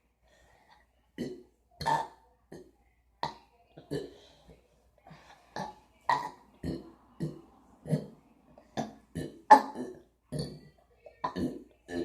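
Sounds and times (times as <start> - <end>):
short burps: 5.6 - 8.2, 8.8 - 12.0.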